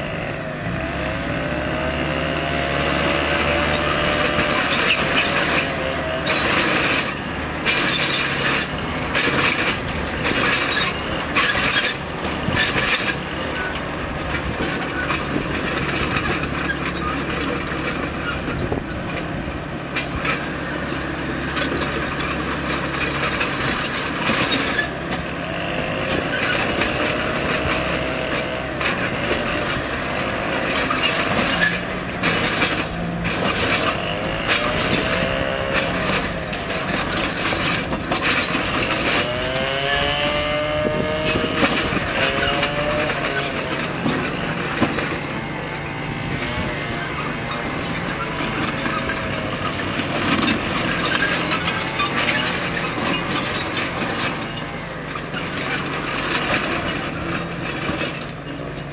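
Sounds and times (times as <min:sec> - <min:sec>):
bulldozer engine under load: 0:00.0 - 0:58.9
rock knocks and clanks: 0:26.1 - 0:39.7, 0:41.0 - 0:45.5
wavering squeals: 0:36.8 - 0:56.2.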